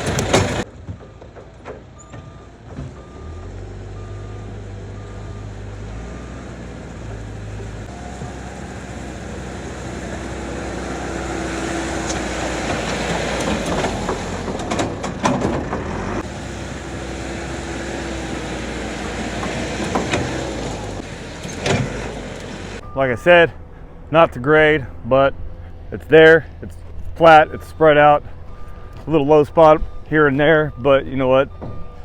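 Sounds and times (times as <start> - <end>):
diesel engine working: 0.0 - 32.0
reversing beeper: 2.0 - 12.2, 18.0 - 32.0.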